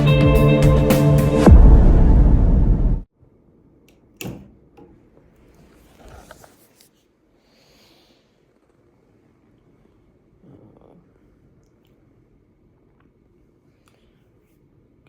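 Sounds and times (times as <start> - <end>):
electronic music: 0.0 - 3.0.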